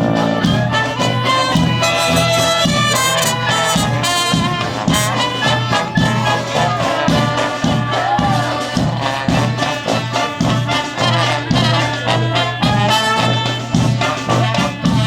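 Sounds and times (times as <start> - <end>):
steady bass beat: 0.0 - 4.8
brass horns playing melody: 0.0 - 15.0.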